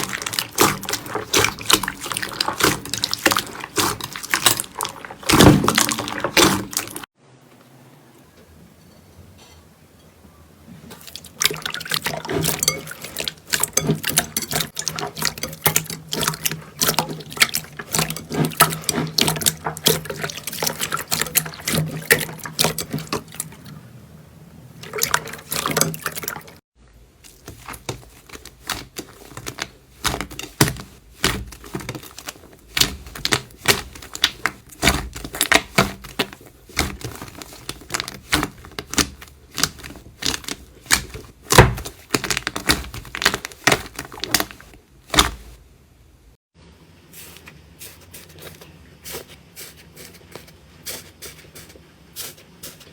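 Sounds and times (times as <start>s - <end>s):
slime squishing and popping: 0.0s - 7.0s, 27.3s - 45.6s.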